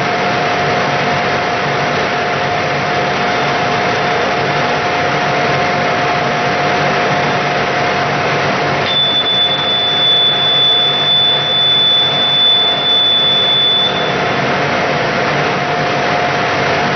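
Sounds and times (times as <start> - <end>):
high brake squeal: 8.9 - 14.4.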